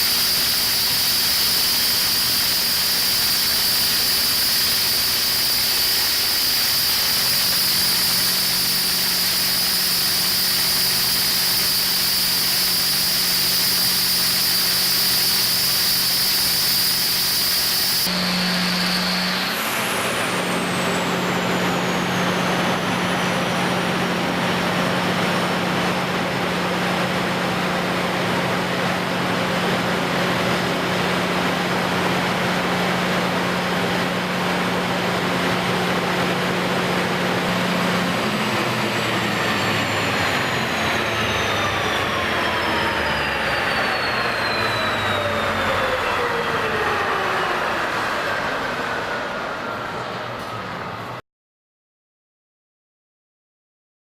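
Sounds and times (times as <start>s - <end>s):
diesel generator running: 0.0s - 51.2s
generator high whine: 0.0s - 51.2s.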